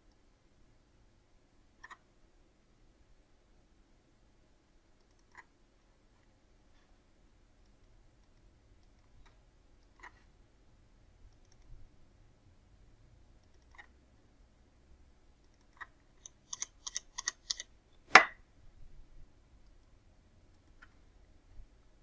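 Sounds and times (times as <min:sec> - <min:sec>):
computer mouse or keyboard clicks: 0:13.4 - 0:13.9, 0:15.4 - 0:17.7.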